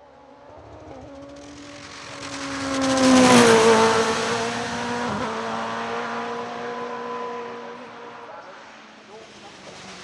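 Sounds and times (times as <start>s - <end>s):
race car passing at speed: 0.1s - 10.0s.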